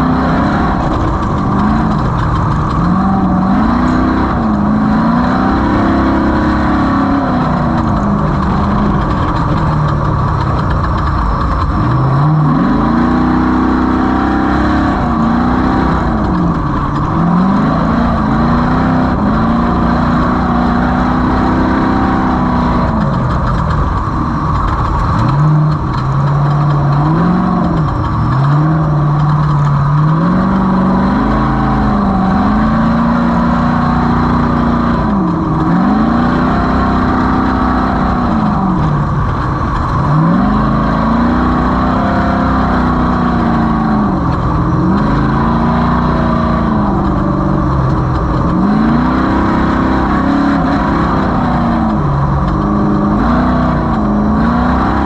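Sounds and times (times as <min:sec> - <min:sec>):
engine revving at high revs: 0:00.0 - 0:55.0.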